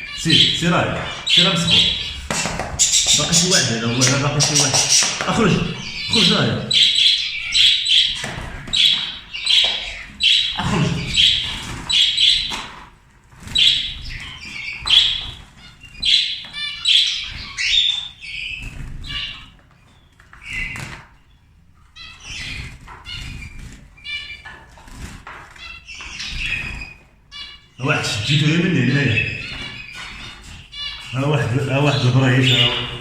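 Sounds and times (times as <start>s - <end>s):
finches giving buzzy calls: 0.0s - 12.6s, 13.5s - 19.6s, 22.0s - 24.5s, 25.6s - 33.0s
wings flapping: 0.0s - 21.1s, 22.2s - 27.1s.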